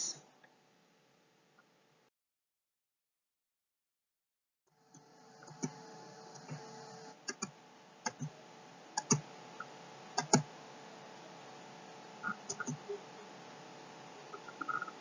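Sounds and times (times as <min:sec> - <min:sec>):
low electrical hum: 0:00.0 - 0:02.1, 0:04.7 - 0:15.0
computer mouse clicks: 0:04.9 - 0:06.7, 0:07.3 - 0:08.3, 0:09.0 - 0:09.2, 0:10.2 - 0:10.5, 0:12.2 - 0:12.8.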